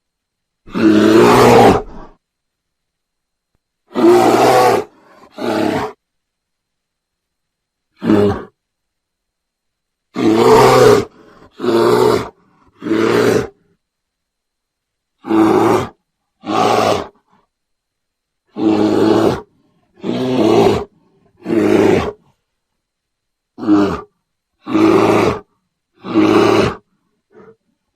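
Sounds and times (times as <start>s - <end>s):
bear roaring: 0.7s - 2.2s, 3.9s - 6.0s, 8.0s - 8.6s, 10.1s - 13.7s, 15.2s - 17.3s, 18.5s - 22.4s, 23.6s - 27.6s.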